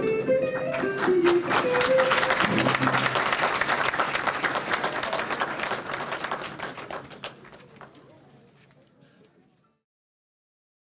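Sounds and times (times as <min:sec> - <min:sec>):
audience applauding: 0:00.6 - 0:08.1.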